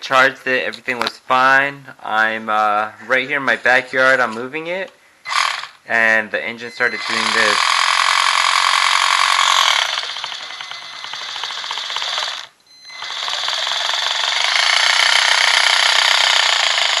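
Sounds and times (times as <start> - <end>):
toy car motor buzzing: 5.3 - 5.8, 6.9 - 17.0.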